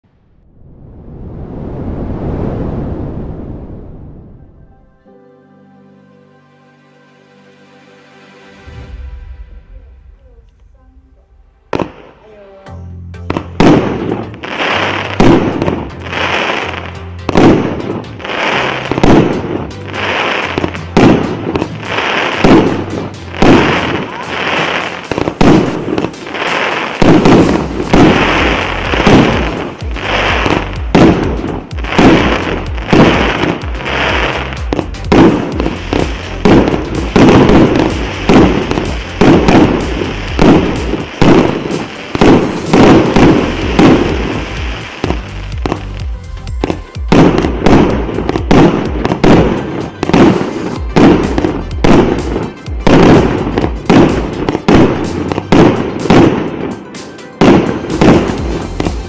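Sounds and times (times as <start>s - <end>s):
fireworks bangs: 8.7s - 12.6s, 13.3s - 59.0s.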